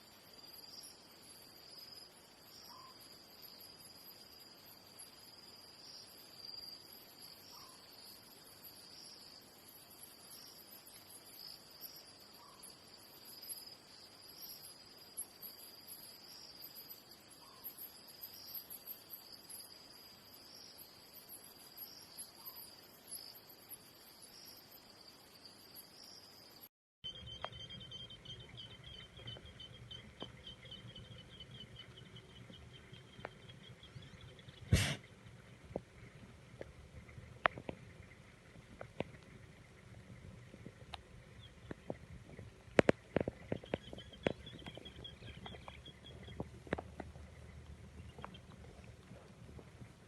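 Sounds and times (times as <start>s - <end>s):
insects trilling: 0.0s - 50.0s
fast pulsing chirp: 27.0s - 35.5s, 37.8s - 49.9s
low rumble: 27.0s - 50.0s.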